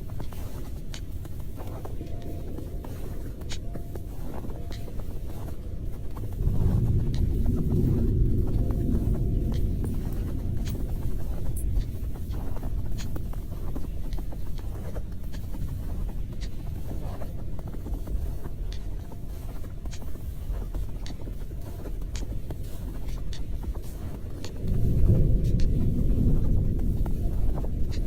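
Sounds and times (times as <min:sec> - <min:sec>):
steady low rumble: 0:00.0 - 0:28.0.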